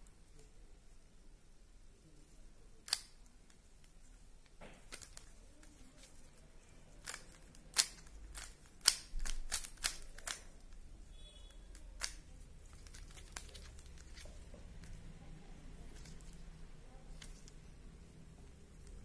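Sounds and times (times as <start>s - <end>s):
plastic puzzle cube clicking: 2.8s - 3.9s, 4.9s - 6.2s, 7.0s - 10.8s, 11.6s - 15.0s, 17.1s - 17.6s.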